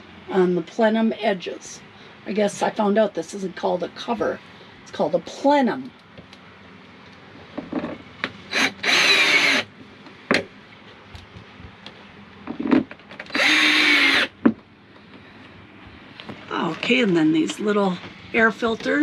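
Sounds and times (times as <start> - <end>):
power drill driving screws: 8.5 - 9.7, 13.3 - 14.3.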